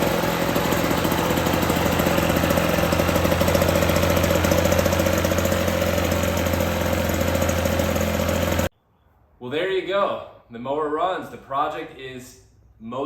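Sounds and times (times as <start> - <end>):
lawn mower engine running: 0.0 - 8.7.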